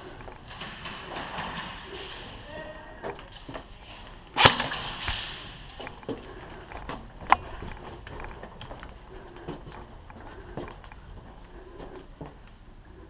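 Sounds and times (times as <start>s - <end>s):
airsoft gun cracks: 4.4s - 5.5s.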